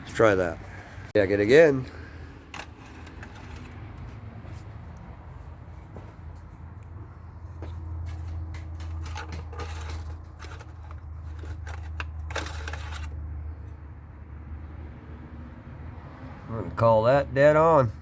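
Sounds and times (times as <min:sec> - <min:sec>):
dipstick clicking and scraping in tube: 0:02.5 - 0:04.2, 0:08.1 - 0:13.2.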